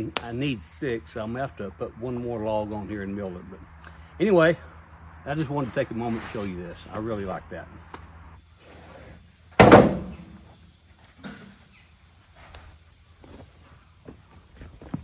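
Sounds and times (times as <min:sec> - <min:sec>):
heavy ringing thump: 0:09.6 - 0:10.4.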